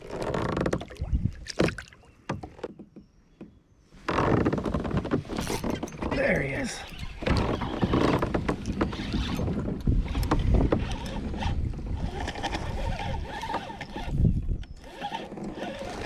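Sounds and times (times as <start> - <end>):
water movement: 0.0 - 2.8
knocks and thumps in kayak: 0.0 - 16.0.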